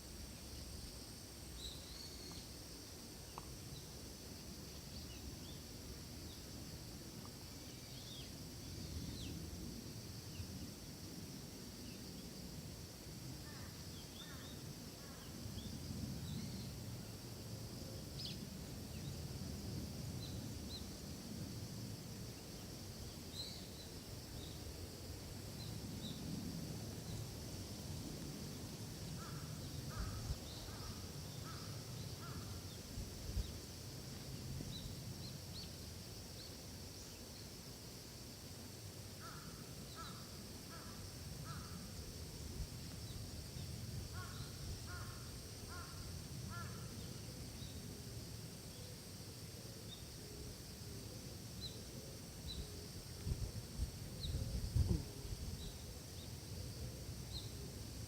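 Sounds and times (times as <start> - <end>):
high insect drone: 0.0 - 58.0.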